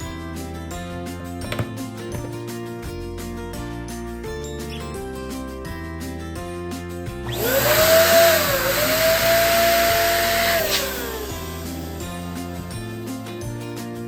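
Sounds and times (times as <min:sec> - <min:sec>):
background music: 0:00.0 - 0:14.0
balloon inflator motor whine: 0:07.2 - 0:12.4.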